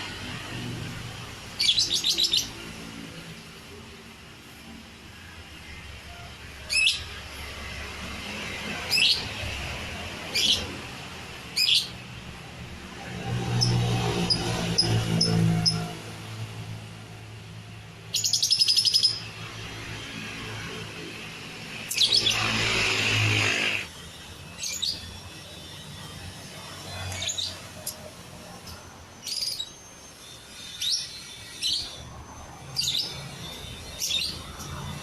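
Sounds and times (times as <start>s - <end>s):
bird chirping and screeching: 0.0s - 3.4s, 6.5s - 12.2s, 13.0s - 16.4s, 18.0s - 35.0s.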